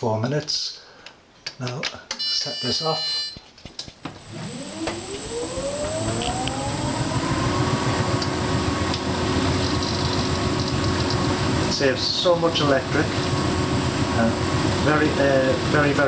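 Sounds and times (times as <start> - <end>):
dryer motor whine: 4.0 - 16.0
faint high whine: 4.1 - 16.0
low rumble: 4.9 - 15.9.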